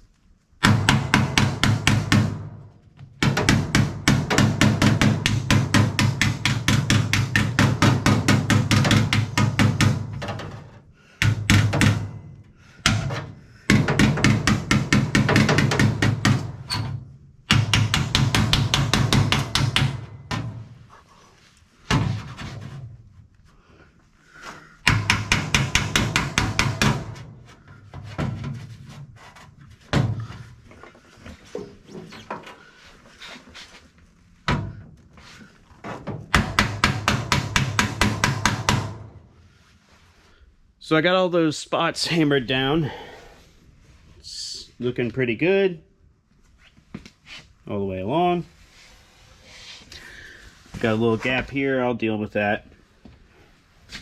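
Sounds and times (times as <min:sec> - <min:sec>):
hammer tapping sheet steel: 0:03.2 - 0:10.2, 0:11.2 - 0:16.8, 0:17.4 - 0:20.6, 0:24.8 - 0:27.4, 0:36.3 - 0:39.1.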